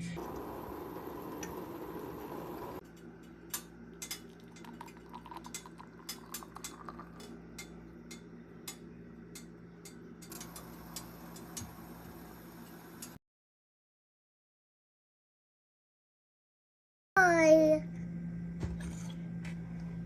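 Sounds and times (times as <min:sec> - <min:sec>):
spoon and mug clinking: 0:04.0 - 0:07.8.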